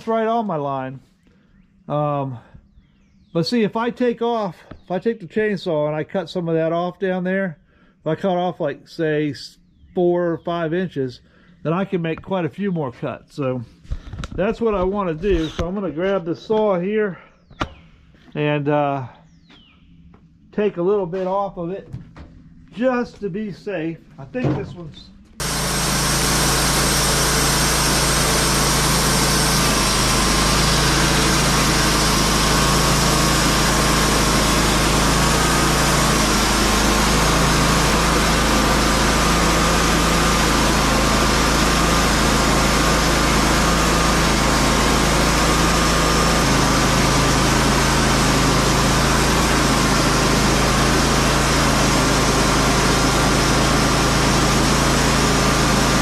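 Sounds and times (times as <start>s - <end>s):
small gasoline engine running: 25.4s - 56.0s.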